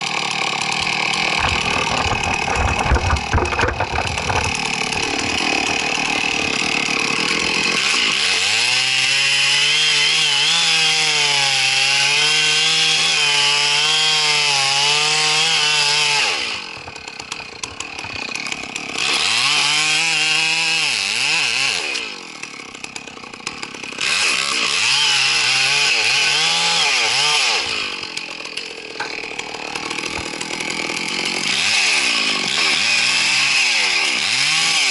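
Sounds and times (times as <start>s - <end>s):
chainsaw cutting: 0.0s - 34.9s
low knocks and rumble: 1.3s - 5.9s.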